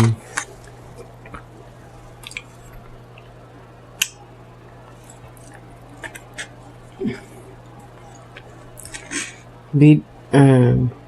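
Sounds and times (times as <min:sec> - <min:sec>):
steady low hum: 0:00.0 - 0:11.0
mouth sounds of chewing: 0:02.2 - 0:03.3, 0:04.9 - 0:09.3.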